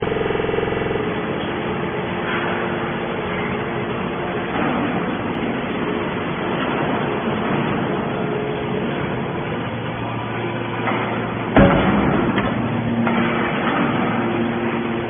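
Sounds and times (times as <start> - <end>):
hydraulic baler drone: 0.0 - 15.0.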